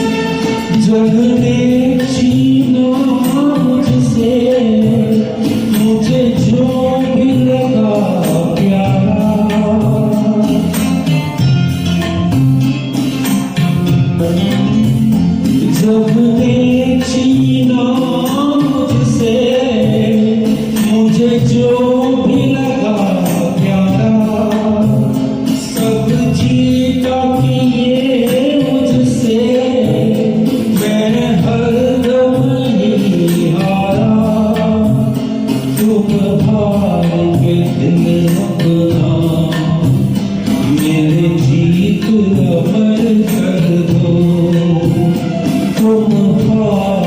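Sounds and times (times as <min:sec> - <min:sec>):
instrumental accompaniment: 0:00.0 - 0:47.0
man singing slow melody: 0:00.0 - 0:47.0.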